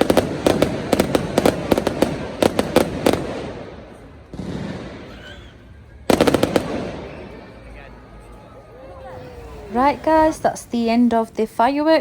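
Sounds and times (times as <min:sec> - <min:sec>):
fireworks bangs and cracks: 0:00.0 - 0:05.1, 0:06.0 - 0:07.5.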